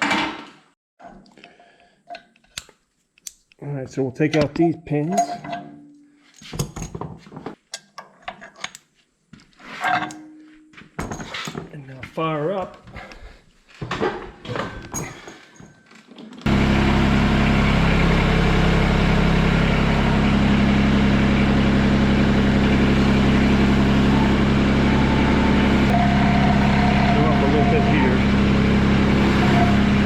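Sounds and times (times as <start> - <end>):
diesel tractor engine running: 16.5 - 30.0.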